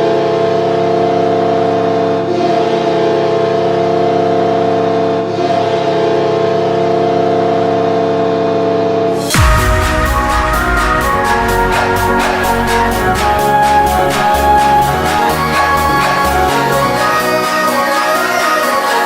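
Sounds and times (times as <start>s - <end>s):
goal horn blaring: 9.3s - 19.0s.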